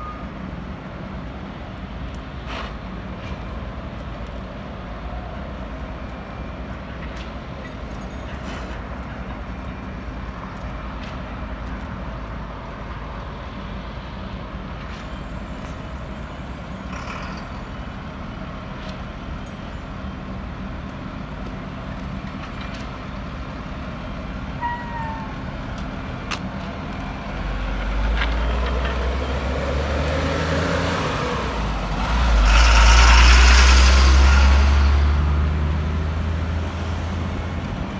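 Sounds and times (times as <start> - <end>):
engine running with low hum: 25.7 - 37.9.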